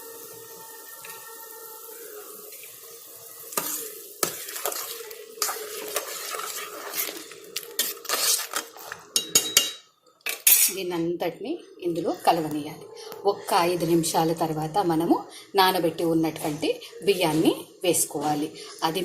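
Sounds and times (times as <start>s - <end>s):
spoon stirring and scraping pot: 2.5s - 10.8s.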